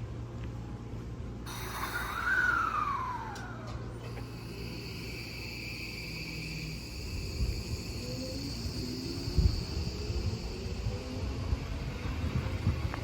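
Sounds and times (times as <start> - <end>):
electric train rumble: 0.0 - 13.0
rising motor tones: 1.5 - 12.4
high insect buzz: 4.1 - 11.1.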